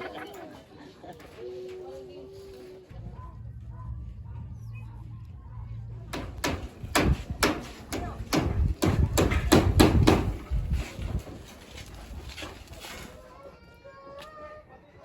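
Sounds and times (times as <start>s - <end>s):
hard knocks: 6.1s - 10.5s.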